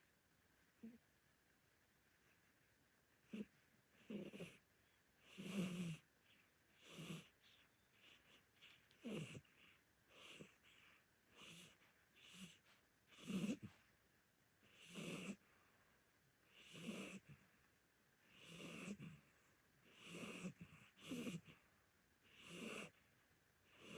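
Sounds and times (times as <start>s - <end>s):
cat snoring faintly: 0.8s - 1.0s, 3.2s - 13.9s, 14.6s - 15.8s, 16.4s - 17.6s, 18.2s - 23.9s.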